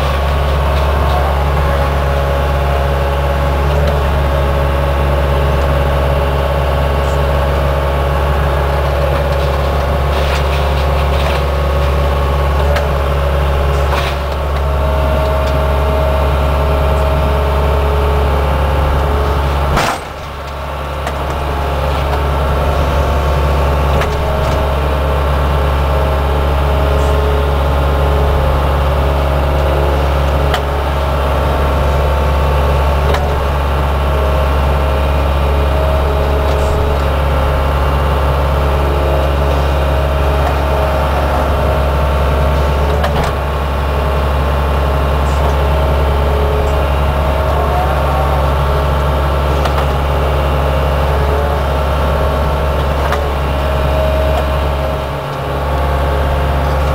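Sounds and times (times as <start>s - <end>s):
excavator diesel engine running: 0.0s - 56.9s
machine knocks: 19.4s - 22.3s.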